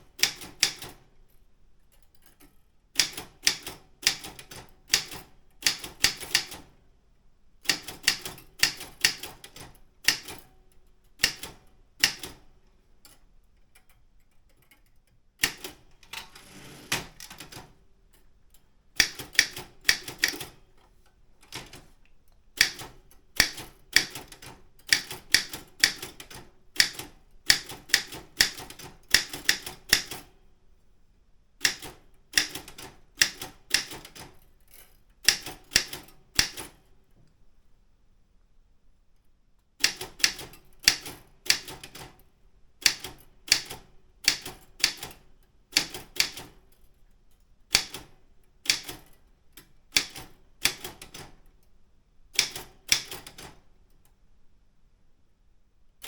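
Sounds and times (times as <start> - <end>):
manual typewriter clacking: 2.2 - 6.8, 7.6 - 10.6, 11.2 - 17.8, 19.0 - 20.6, 21.4 - 22.0, 22.6 - 30.3, 31.6 - 36.8, 39.8 - 42.2, 42.8 - 46.7, 47.7 - 51.4, 52.4 - 53.6.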